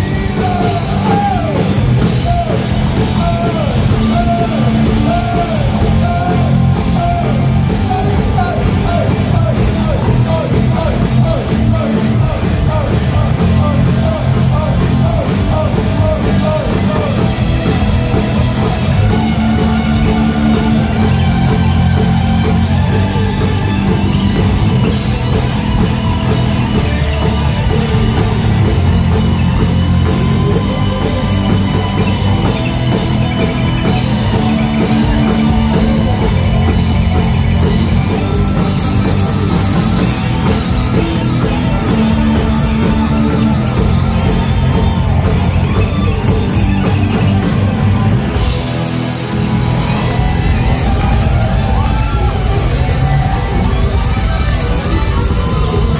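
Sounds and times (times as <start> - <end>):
person singing: 0.0 - 22.5
drum kit beat: 0.0 - 55.9
electric guitar: 0.0 - 55.9.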